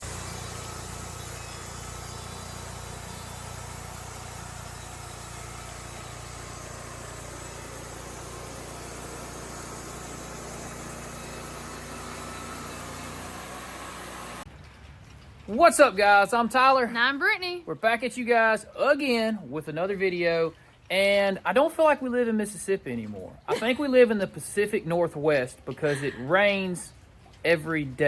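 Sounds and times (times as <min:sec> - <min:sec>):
engine idling: 0:00.0 - 0:15.8.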